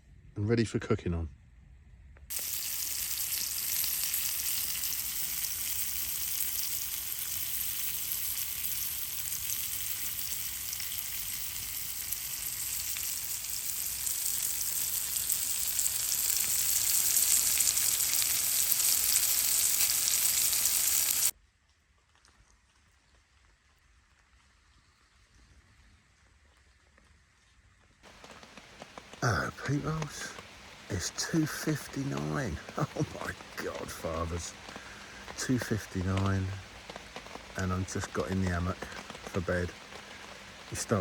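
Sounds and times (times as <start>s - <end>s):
food sizzling in a pan: 2.3s - 21.3s, 28.1s - 41.0s.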